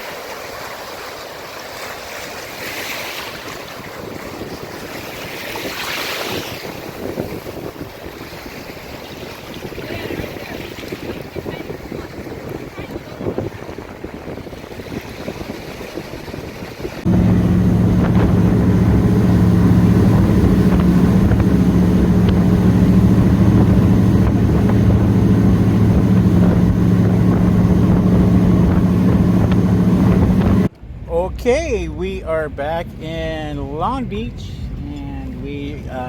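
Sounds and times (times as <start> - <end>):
wind and water noise: 0.0 - 36.0
jet ski engine drone: 17.0 - 36.0.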